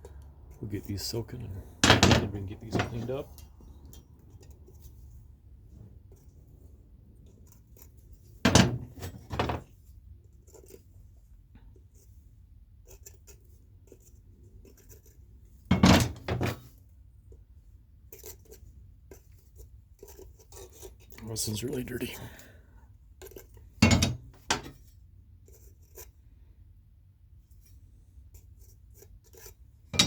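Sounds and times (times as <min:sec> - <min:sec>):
faint handling noise: 0:00.0 - 0:12.2.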